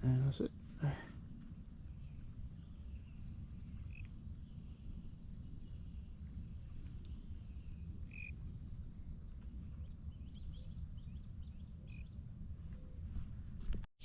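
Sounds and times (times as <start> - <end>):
low steady rumble: 0.0 - 13.8
bird chirping: 9.6 - 13.0.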